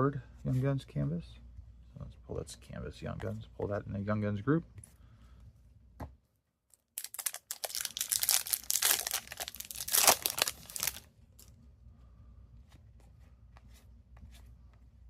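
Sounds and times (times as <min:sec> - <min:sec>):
foil wrapper tearing and crinkling: 0:06.9 - 0:11.1.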